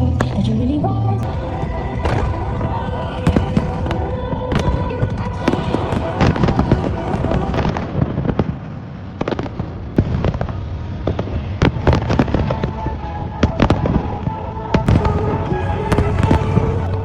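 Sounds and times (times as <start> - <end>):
music playing: 0.0 - 8.1, 11.9 - 17.0
fireworks bangs and crackles: 1.2 - 17.0.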